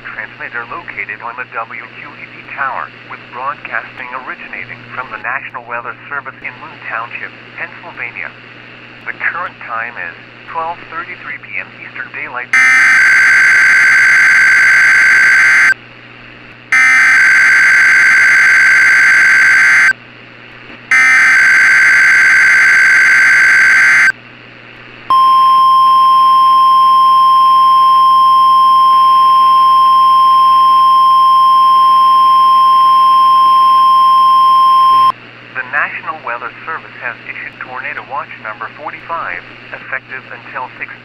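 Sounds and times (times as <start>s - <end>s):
shrill digital data bursts: 12.6s - 15.8s, 16.8s - 19.9s, 20.9s - 24.1s
steady warning alarm tone: 12.6s - 15.8s, 16.7s - 19.9s, 20.9s - 24.1s, 25.1s - 35.1s.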